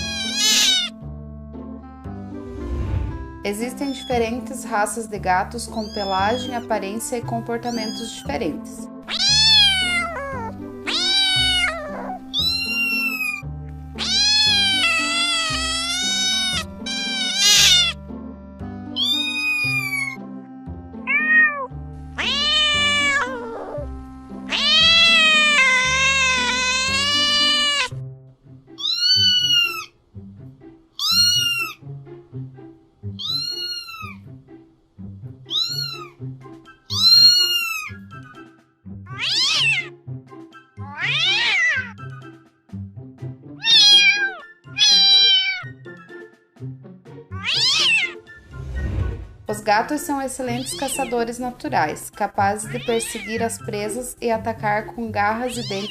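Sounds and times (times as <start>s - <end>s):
cat meowing: 0.0s - 1.0s, 3.9s - 4.2s, 5.8s - 6.7s, 7.7s - 8.3s, 9.1s - 13.4s, 14.0s - 18.0s, 19.0s - 20.2s, 21.1s - 23.9s, 24.5s - 27.9s, 28.8s - 29.9s, 31.0s - 31.8s, 33.1s - 34.2s, 35.5s - 36.2s, 36.9s - 38.4s, 39.1s - 40.0s, 40.8s - 42.1s, 43.6s - 45.8s, 47.3s - 48.2s, 50.5s - 51.2s, 52.6s - 53.6s, 55.5s - 55.9s
background music: 0.0s - 55.9s.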